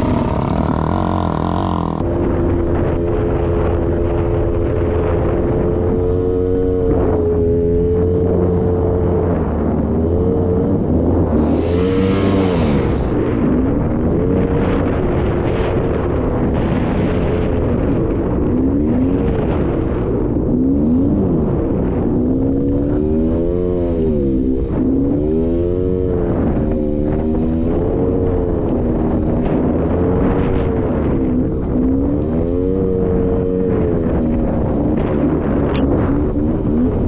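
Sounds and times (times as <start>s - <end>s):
atv engine revving: 0.0s - 15.7s.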